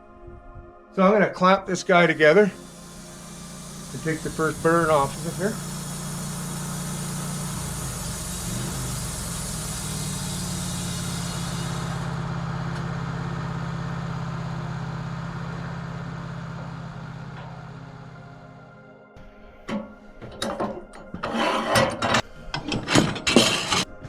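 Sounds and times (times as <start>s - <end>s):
sawmill engine running: 1.6s - 24.0s
high hiss of saw cutting log: 1.8s - 12.9s.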